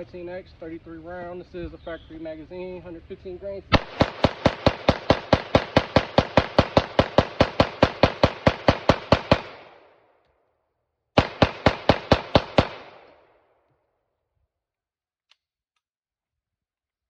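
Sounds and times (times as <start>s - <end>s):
pistol firing rapid shots: 3.7s - 10.0s, 11.2s - 13.3s.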